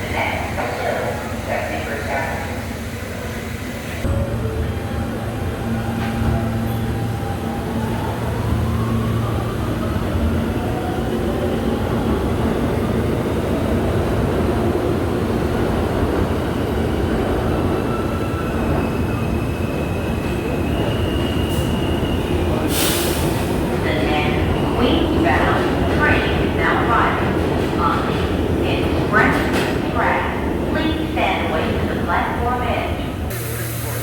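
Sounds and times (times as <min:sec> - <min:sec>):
train wheels rumbling on rails: 0:00.0 - 0:34.0
loud air hiss: 0:22.7 - 0:23.5, 0:33.3 - 0:34.0.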